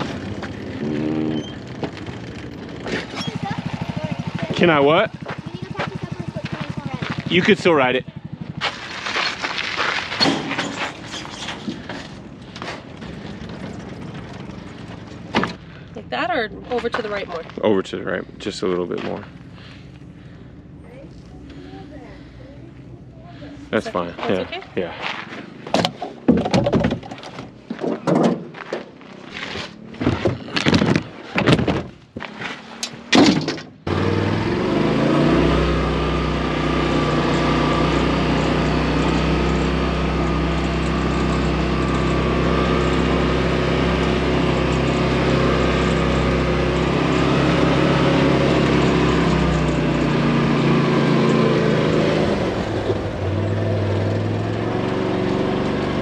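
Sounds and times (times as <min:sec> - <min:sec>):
engine running steadily: 0:00.0 - 0:26.2, 0:33.8 - 0:56.0
irregular knocks and thunks: 0:25.6 - 0:28.9, 0:29.9 - 0:32.4, 0:33.0 - 0:33.8.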